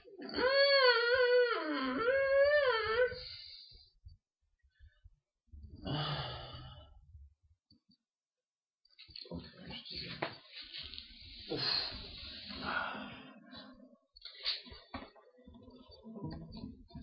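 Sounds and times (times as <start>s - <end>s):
wavering vocal moan: 0.1s - 3.3s
breathy low groan: 5.7s - 7.0s.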